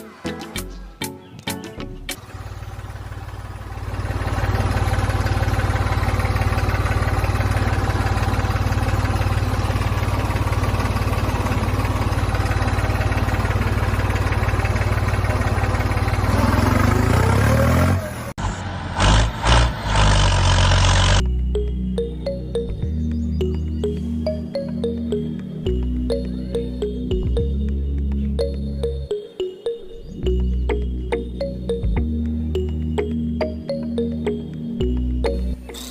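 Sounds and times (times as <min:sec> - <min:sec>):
motor running steadily: 0:02.2 - 0:16.6.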